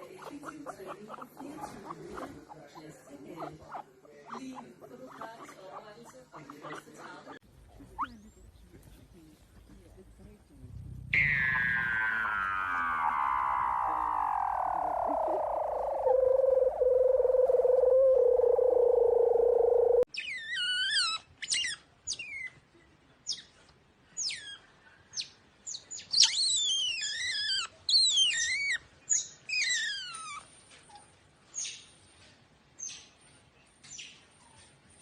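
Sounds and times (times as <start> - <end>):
small animal squeaky chirping: 11.1 - 22.6, 24.2 - 24.6, 26.0 - 31.0.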